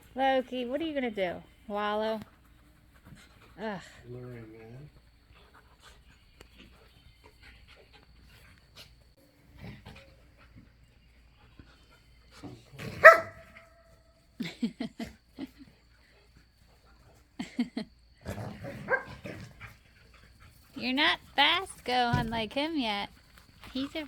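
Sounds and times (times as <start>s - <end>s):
high-pitched dog bark: 13.0s - 13.4s
short deep dog barks: 13.0s - 13.4s.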